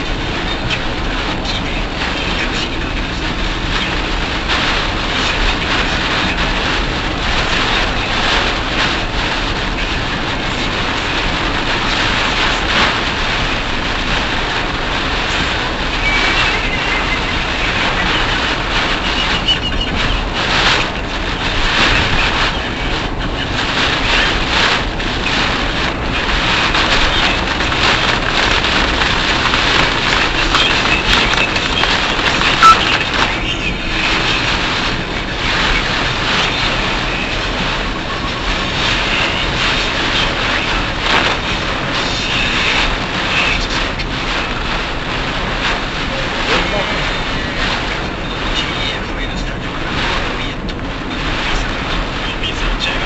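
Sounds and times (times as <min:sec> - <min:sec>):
rain against car: 0:00.0 - 0:53.0
tyres hissing on wet road: 0:00.0 - 0:53.0.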